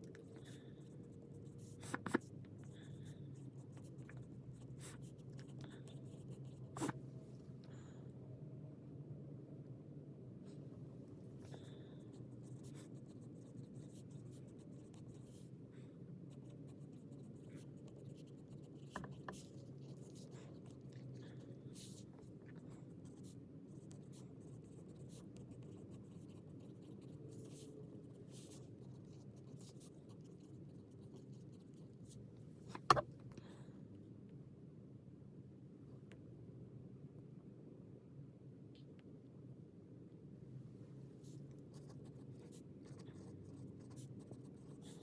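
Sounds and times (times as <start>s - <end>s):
pen scratching on paper: 0.5s - 7.0s, 11.4s - 15.6s, 16.3s - 33.0s, 41.2s - 45.0s.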